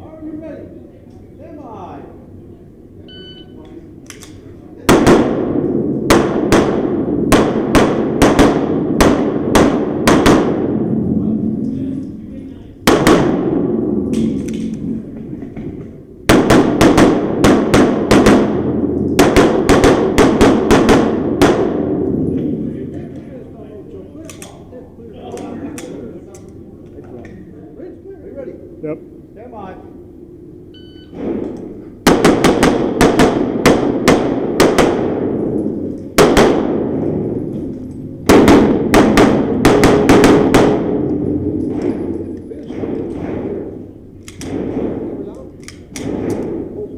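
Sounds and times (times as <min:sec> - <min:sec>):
handgun shots echoing: 0:31.2 - 0:46.7.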